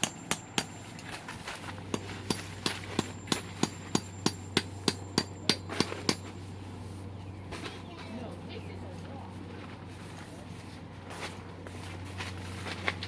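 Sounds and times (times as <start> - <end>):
rapid hammer strikes: 0.0 - 1.1, 1.9 - 6.4
steady low hum: 0.0 - 12.8.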